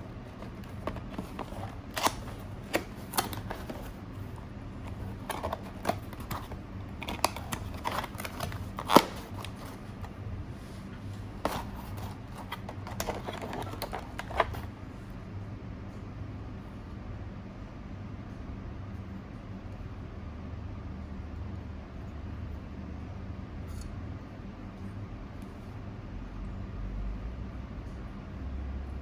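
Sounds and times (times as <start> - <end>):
cardboard and plastic packaging rustling: 0.0 - 14.8
steady low hum: 0.0 - 29.0.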